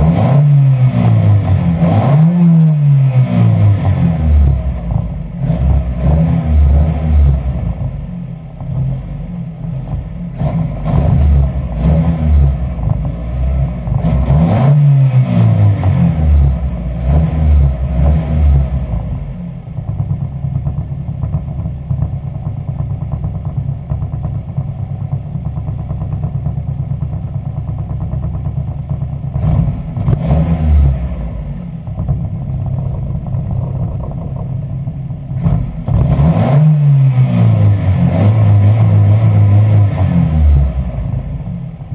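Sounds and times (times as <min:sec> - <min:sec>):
car engine revving and idling: 0:00.0 - 0:41.9.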